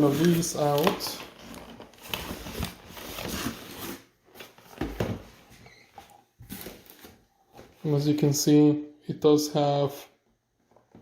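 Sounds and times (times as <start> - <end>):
packaging rustling and scraping: 0.0 - 7.8.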